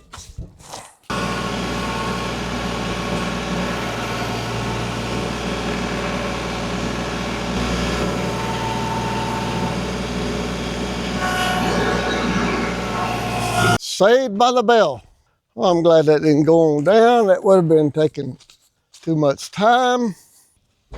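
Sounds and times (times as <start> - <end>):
gas engine running: 1.1 - 13.8.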